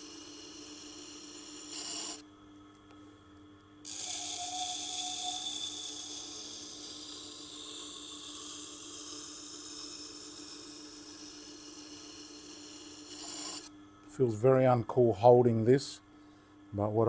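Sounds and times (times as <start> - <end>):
blade grinding on sharpening wheel: 0.0 - 2.2, 3.9 - 13.7.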